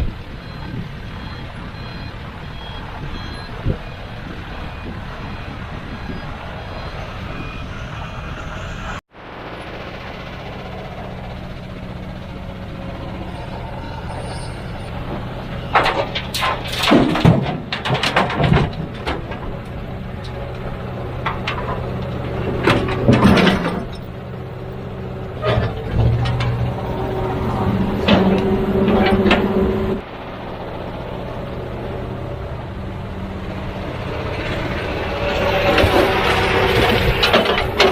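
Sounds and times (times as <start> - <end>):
diesel machinery engine running: 0.0 - 37.9
loud clattering and banging: 14.6 - 24.2, 25.4 - 30.0, 34.6 - 37.9.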